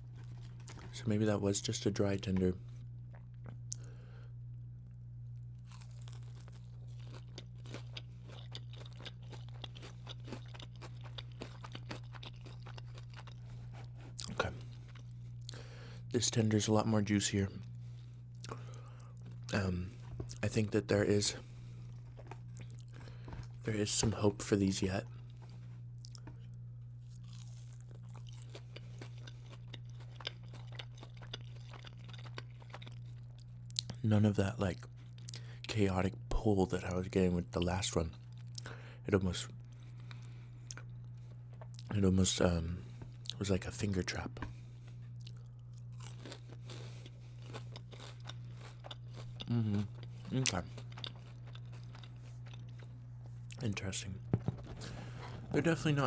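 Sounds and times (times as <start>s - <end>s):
crunchy chewing: 0.0s - 1.1s, 5.6s - 16.1s, 17.6s - 34.0s, 44.4s - 56.0s
steady low hum: 0.0s - 56.0s.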